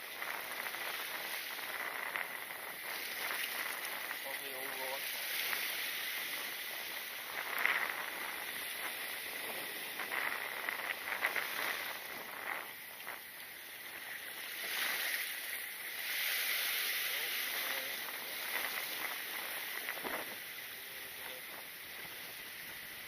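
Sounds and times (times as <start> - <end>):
surf washing against rocks: 0.0 - 23.0.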